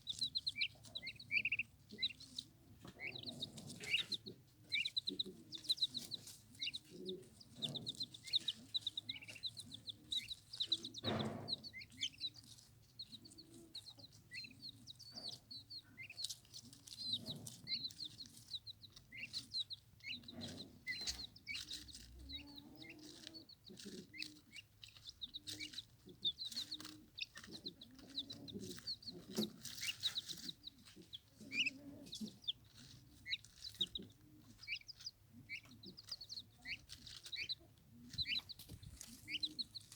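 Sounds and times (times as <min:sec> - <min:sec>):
soft low clucking: 0:00.0 - 0:18.4
poults peeping: 0:00.0 - 0:39.9.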